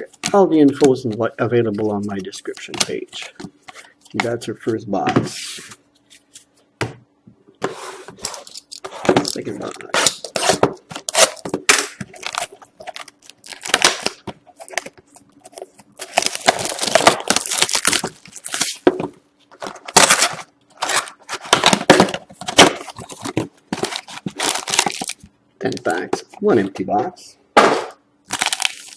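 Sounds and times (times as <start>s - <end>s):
plastic and cardboard tearing: 9.6s - 14.9s, 15.6s - 18.8s, 19.7s - 25.2s, 28.3s - 28.9s.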